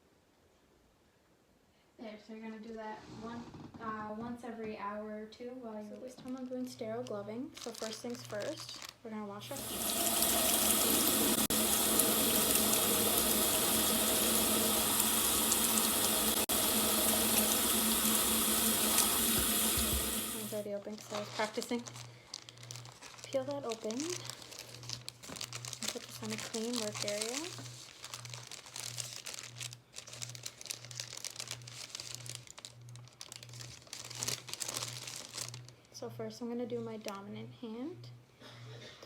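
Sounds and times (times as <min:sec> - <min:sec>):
paper wrapper crinkling: 0:06.3 - 0:12.7, 0:20.5 - 0:35.9
tap water running into sink: 0:09.5 - 0:20.6.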